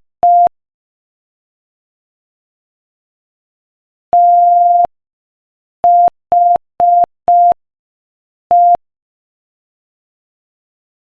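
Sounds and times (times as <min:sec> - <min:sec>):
morse code beeps: 0:04.2 - 0:04.9, 0:05.9 - 0:07.6, 0:08.5 - 0:08.8.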